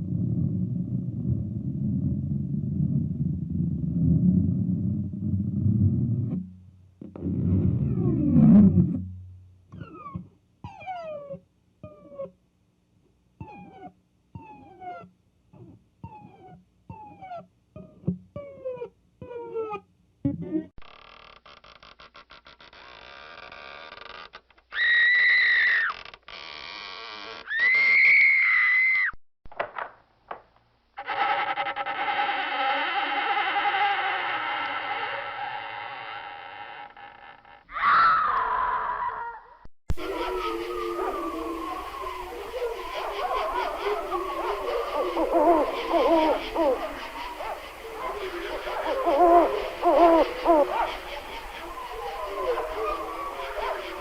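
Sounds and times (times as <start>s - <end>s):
low distorted droning rumble: 0.0s - 9.7s
eerie textured drone: 40.0s - 54.0s
growl with falling sweeps: 40.0s - 54.0s.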